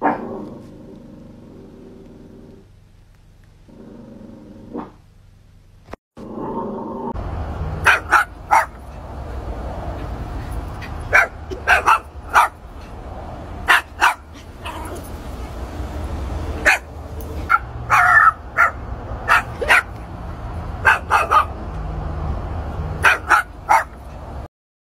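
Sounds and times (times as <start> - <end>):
low steady rumble: 0.4 - 19.7
small dog yapping: 7.8 - 8.8, 11.0 - 12.6, 17.5 - 20.0, 20.8 - 21.5, 23.0 - 24.0.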